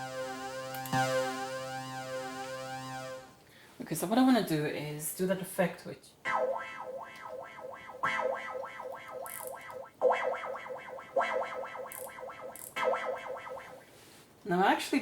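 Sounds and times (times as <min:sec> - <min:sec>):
synthesizer choppy repeated notes: 0:00.0 - 0:03.4, 0:06.3 - 0:13.8.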